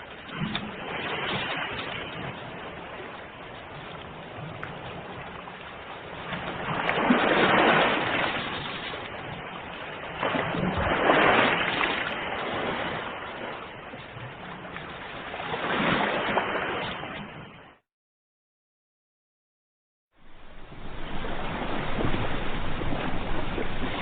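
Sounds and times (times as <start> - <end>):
ocean waves breaking on shore: 0.0 - 17.8, 20.2 - 24.0.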